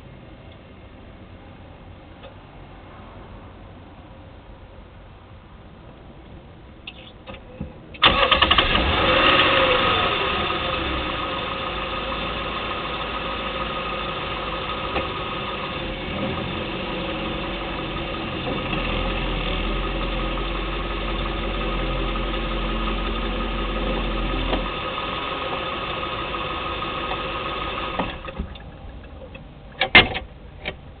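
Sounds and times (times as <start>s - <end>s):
car engine starting and idling: 6.8s - 31.0s.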